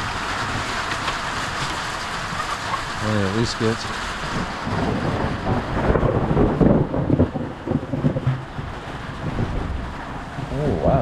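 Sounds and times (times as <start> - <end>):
falling rain: 0.0 - 11.0
thunder rumbling: 3.8 - 11.0.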